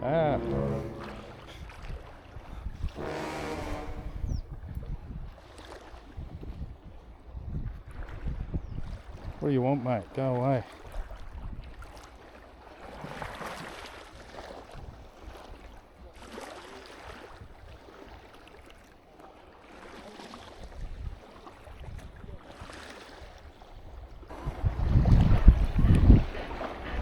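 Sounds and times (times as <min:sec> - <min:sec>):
wind gusting on microphone: 0:24.3 - 0:27.0.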